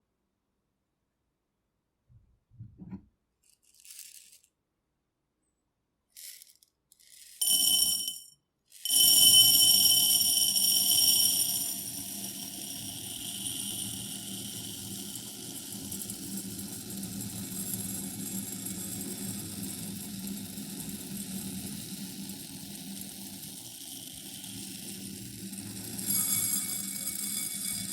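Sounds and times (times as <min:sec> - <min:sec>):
grains pouring into glass bowl: 0:03.7 - 0:04.5, 0:06.2 - 0:19.6, 0:20.2 - 0:27.9
glass bowl ringing: 0:26.1 - 0:27.9.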